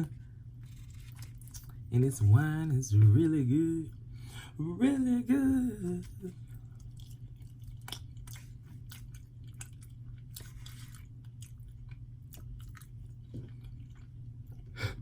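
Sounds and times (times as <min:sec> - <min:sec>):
close chewing with mouth clicks: 0:00.0 - 0:01.9, 0:06.0 - 0:15.0
steady low hum: 0:00.0 - 0:15.0.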